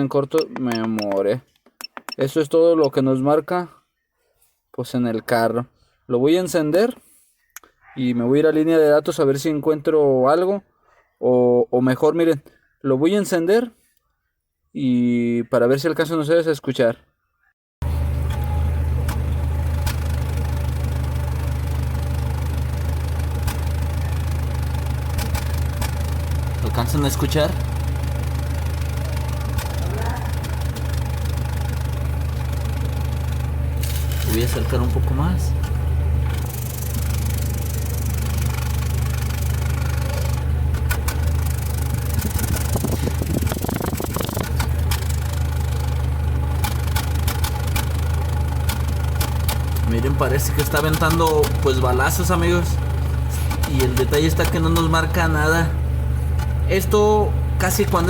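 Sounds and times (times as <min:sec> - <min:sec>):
car engine idling: 0:17.8 - 0:58.0
sharp exhaust pops: 0:35.6 - 0:55.2, 0:56.2 - 0:56.6
engine misfire pops: 0:56.2 - 0:56.6.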